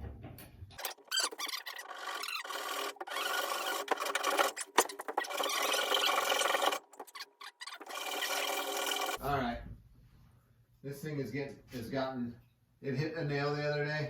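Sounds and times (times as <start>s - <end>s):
hand tool rasping wood: 0.8s - 9.2s.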